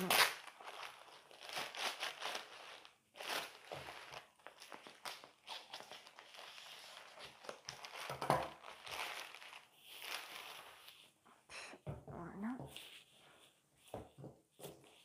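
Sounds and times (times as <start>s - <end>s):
packaging crinkling and rustling: 0.0s - 11.1s.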